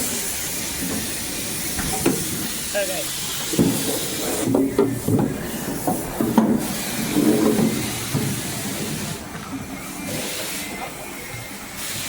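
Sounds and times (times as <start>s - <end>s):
knocks and scraping: 3.4s - 9.5s.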